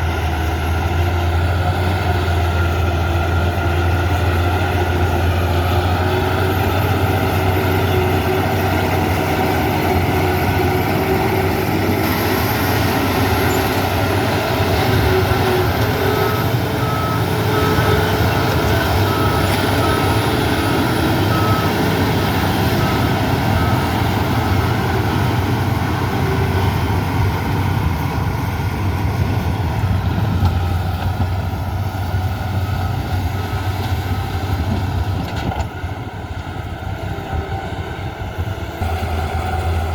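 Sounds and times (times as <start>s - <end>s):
diesel engine deep hum: 0.0s - 39.9s
reversing alarm beeps: 12.4s - 25.4s.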